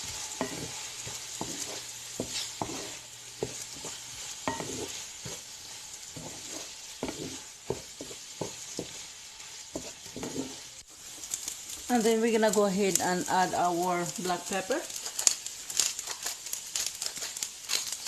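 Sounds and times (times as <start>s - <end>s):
utensil scraping pan: 0.0s - 10.7s
rice sizzling in oil: 0.0s - 18.0s.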